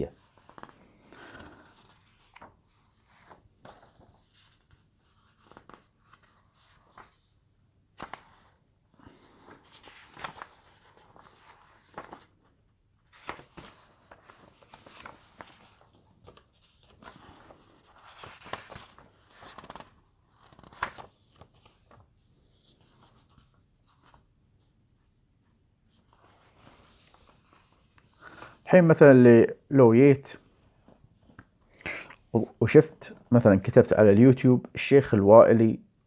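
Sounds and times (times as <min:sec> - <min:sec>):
paper rustling: 0:00.1 - 0:07.4, 0:08.0 - 0:24.3, 0:25.9 - 0:28.6.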